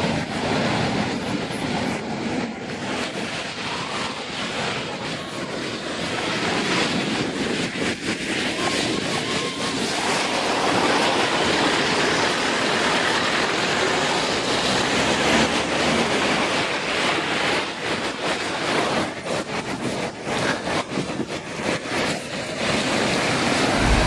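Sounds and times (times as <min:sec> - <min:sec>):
loud rushing roar: 0:23.6 - 0:24.0.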